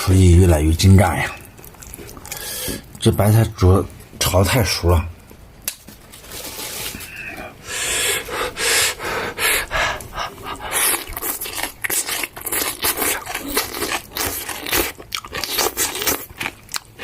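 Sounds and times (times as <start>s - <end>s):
person chewing crunchy food: 1.3s - 3.0s, 9.7s - 17.0s.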